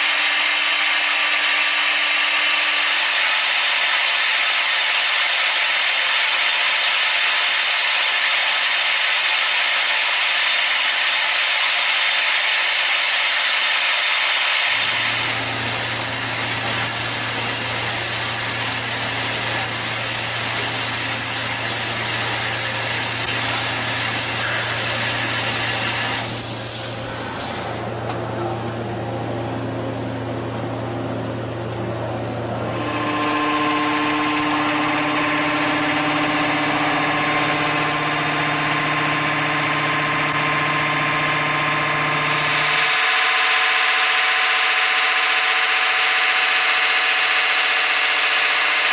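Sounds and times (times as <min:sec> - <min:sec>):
machine motor hum: 0:00.0 - 0:48.9
spindle whine: 0:00.0 - 0:48.9
hiss of cutting: 0:14.7 - 0:27.9.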